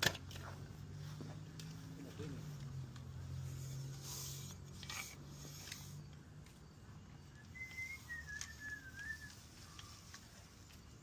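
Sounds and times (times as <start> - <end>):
faint wavering whistle: 7.2 - 10.3.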